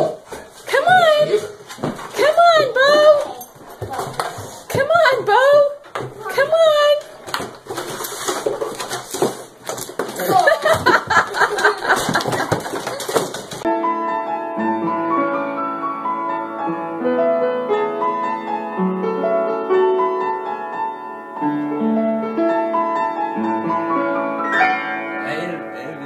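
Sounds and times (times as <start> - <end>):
slow piano melody: 13.6 - 26.0.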